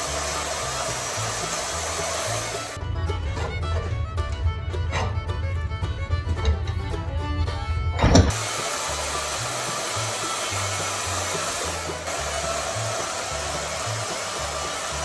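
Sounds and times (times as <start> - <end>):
steady rushing hiss: 0.0 - 2.8, 8.3 - 15.0
fiddle music: 0.0 - 15.0
low bass notes: 0.0 - 15.0.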